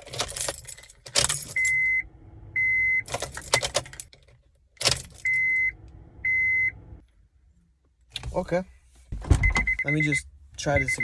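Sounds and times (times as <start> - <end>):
keyring jangling: 0.0 - 1.8
car electronic chime beeps: 5.3 - 6.8, 9.4 - 11.0.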